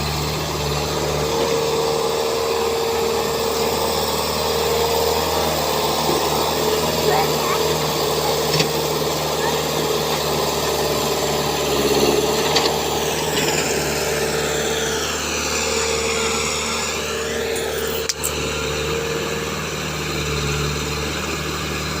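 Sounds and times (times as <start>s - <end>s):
excavator diesel engine running: 0.0s - 22.0s.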